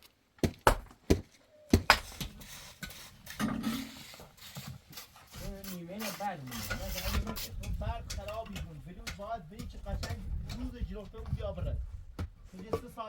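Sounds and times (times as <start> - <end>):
sharp knocks: 0.4 - 2.4
person speaking: 5.4 - 13.0
clattering: 6.5 - 13.0.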